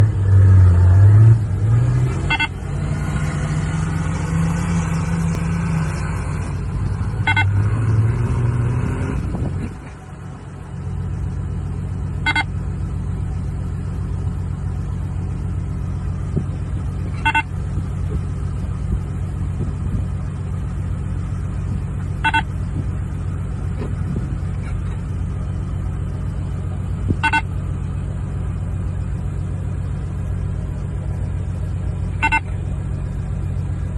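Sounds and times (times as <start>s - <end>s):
engine revving: 0.0s - 10.5s
short high beep: 2.2s - 2.6s, 7.2s - 7.6s, 12.2s - 12.5s, 17.2s - 17.5s, 22.2s - 22.5s, 27.2s - 27.5s, 32.2s - 32.6s.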